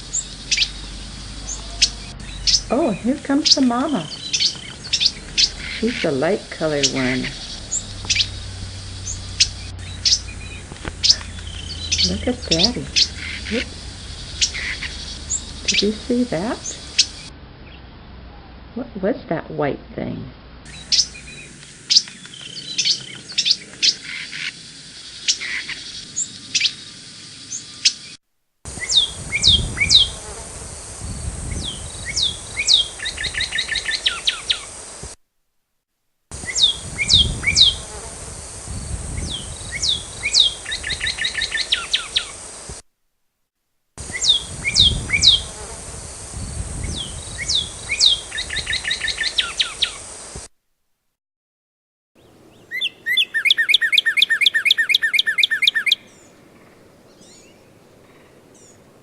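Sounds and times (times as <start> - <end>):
birdsong whistles and trill: 0.0 - 17.8, 20.7 - 28.2, 28.8 - 30.2, 31.4 - 34.7, 36.4 - 38.0, 39.1 - 42.4, 44.0 - 45.6, 46.5 - 50.0, 52.5 - 56.3
songbirds chirping: 0.0 - 35.1, 36.3 - 42.8, 44.0 - 50.4, 52.2 - 59.0.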